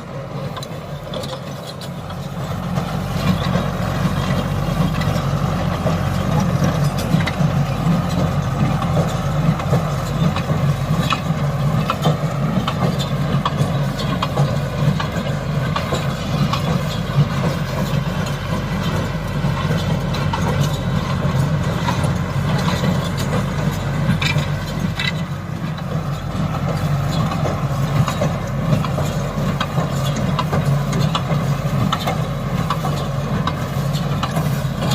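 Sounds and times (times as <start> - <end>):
engine drone: 0.0 - 34.9
mechanical clicks and clatter: 8.1 - 34.9.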